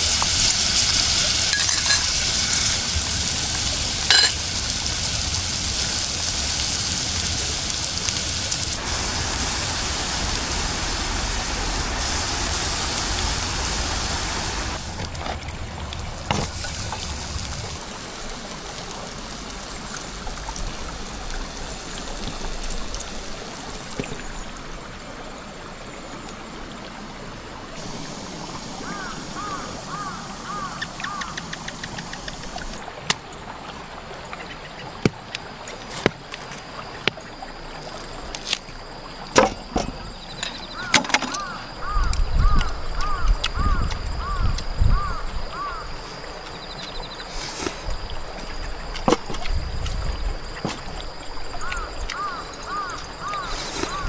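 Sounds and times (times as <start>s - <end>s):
steady hiss of water: 0.0s - 54.0s
sharp clinks: 1.4s - 2.8s, 4.1s - 4.4s.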